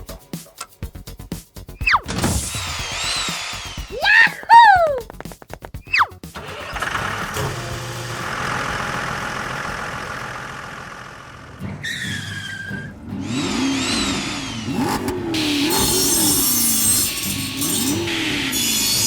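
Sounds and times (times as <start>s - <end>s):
toy car engine running: 2.5s - 5.4s, 13.2s - 19.0s.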